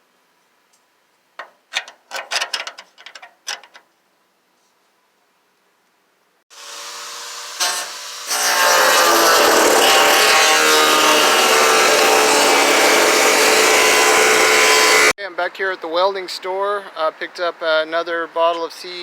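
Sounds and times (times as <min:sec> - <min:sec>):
angle grinder grinding metal: 0:06.6 - 0:15.1.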